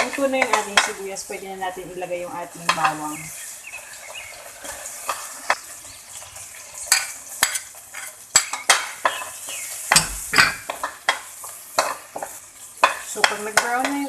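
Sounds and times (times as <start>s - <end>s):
onion and garlic sizzling: 0.0s - 14.0s
utensil scraping and knocking pan: 6.9s - 14.0s.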